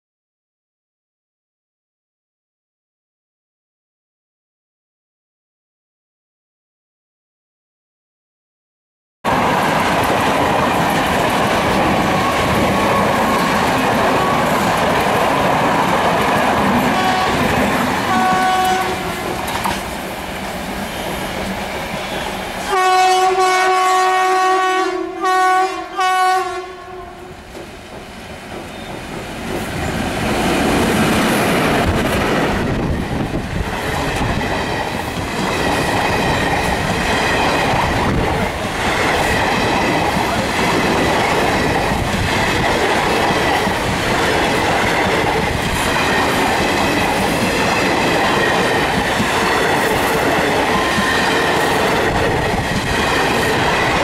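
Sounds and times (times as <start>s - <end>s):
train wheels clattering on rails: 9.4s - 22.6s, 27.4s - 54.0s
locomotive horn: 16.8s - 19.4s, 22.1s - 27.4s.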